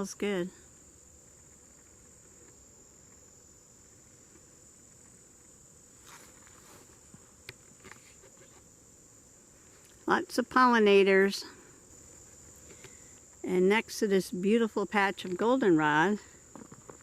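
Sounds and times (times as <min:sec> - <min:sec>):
insects singing: 0:00.0 - 0:17.0
soft rustles and clicks: 0:01.2 - 0:08.7.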